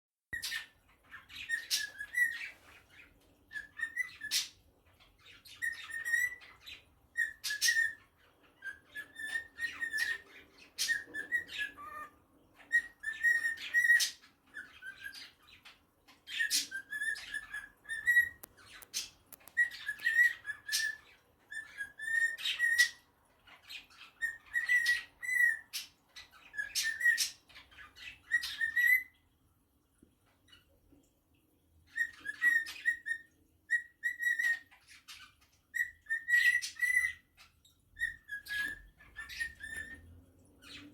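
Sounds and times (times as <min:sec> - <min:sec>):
cockatiel clicking chirps: 0:16.4 - 0:21.0
cockatiel whistled warbling: 0:16.5 - 0:18.5.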